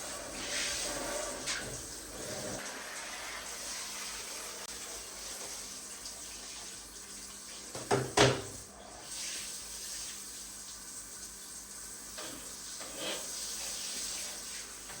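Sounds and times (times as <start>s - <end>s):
water running from tap: 0.0s - 15.0s.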